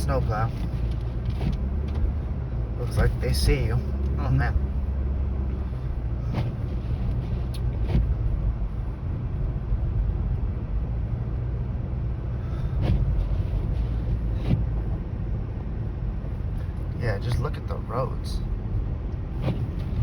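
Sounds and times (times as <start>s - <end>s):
car driving on snowy road: 0.0s - 20.0s.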